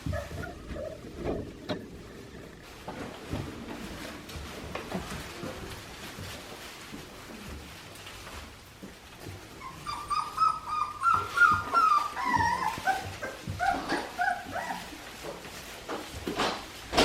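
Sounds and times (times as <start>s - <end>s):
puppies whimpering and yipping: 0.0s - 2.6s, 9.4s - 15.8s.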